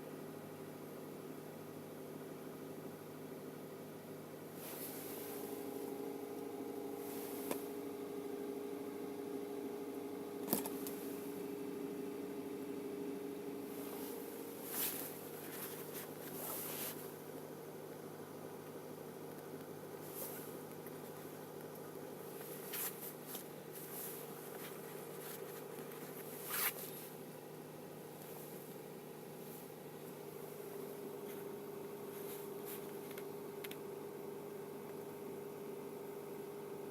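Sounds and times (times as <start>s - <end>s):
rustling scrapes: 4.6s - 5.7s, 7.0s - 7.6s, 13.8s - 17.1s, 20.1s - 20.6s, 22.3s - 27.2s.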